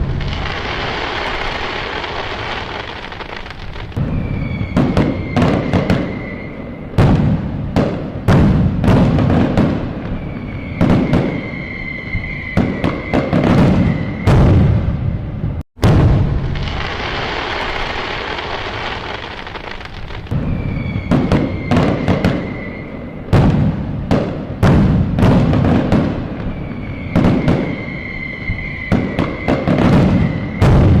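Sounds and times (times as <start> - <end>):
fireworks bangs: 0.0 - 31.0
steady whistling tone: 4.0 - 7.0, 10.1 - 14.6, 20.3 - 23.3, 26.4 - 31.0.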